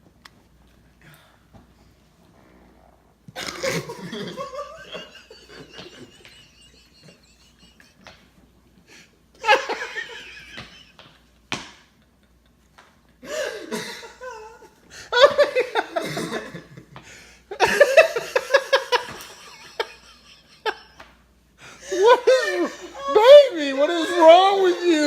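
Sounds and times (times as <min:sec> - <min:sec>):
person laughing: 0:03.4 - 0:08.1, 0:13.2 - 0:16.8, 0:17.5 - 0:21.0, 0:21.8 - 0:25.0.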